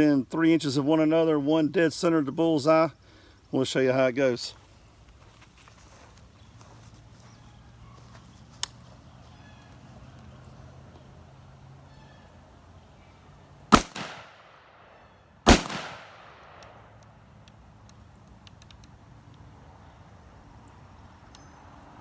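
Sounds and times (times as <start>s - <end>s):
gunshot echo: 13.7s - 14.9s, 15.5s - 16.8s
rifle shots: 13.7s - 16.8s.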